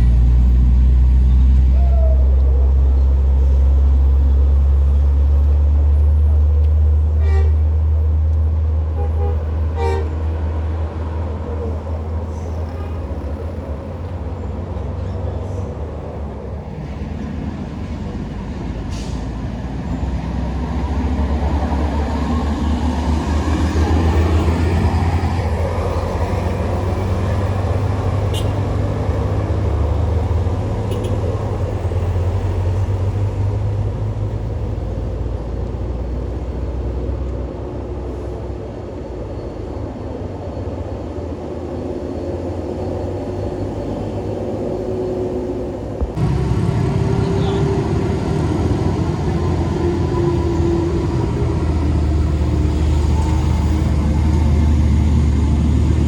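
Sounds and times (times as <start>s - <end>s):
diesel engine rumble passing: 0.0s - 56.0s.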